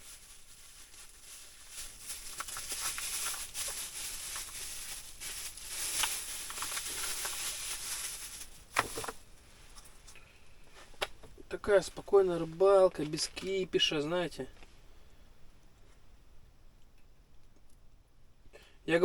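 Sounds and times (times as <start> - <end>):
rustling and crinkling: 0.0 - 14.9.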